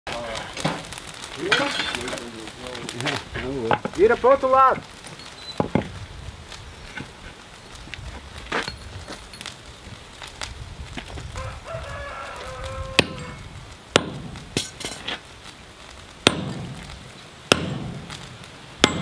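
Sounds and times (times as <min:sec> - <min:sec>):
rooster crowing: 0:11.3 - 0:13.5
hammer striking steel: 0:14.0 - 0:15.0, 0:16.3 - 0:16.8, 0:17.5 - 0:18.2, 0:18.8 - 0:19.0.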